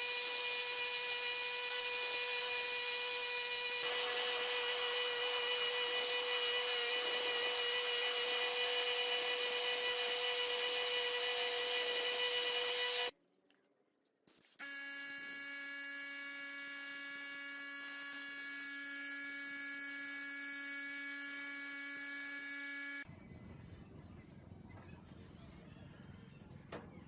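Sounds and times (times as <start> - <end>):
small electric motor whining: 0.0 - 13.1, 14.6 - 23.0.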